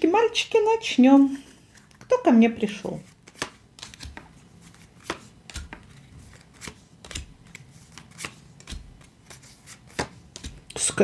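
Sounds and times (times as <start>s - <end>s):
cards shuffling: 1.7s - 2.1s, 2.9s - 10.9s.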